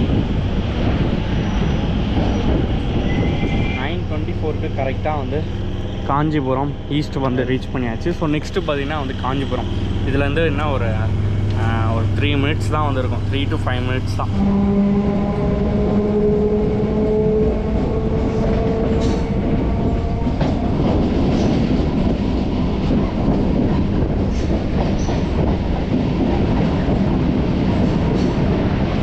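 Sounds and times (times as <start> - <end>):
electric train whine: 0.0 - 29.0
train wheels rumbling on rails: 0.0 - 29.0.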